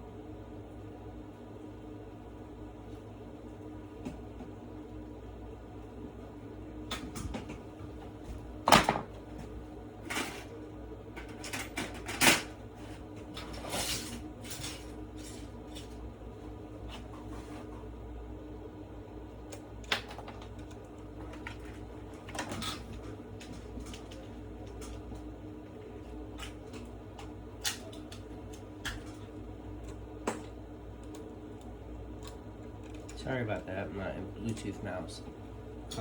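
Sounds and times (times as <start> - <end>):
steady low hum: 0.0 - 36.0.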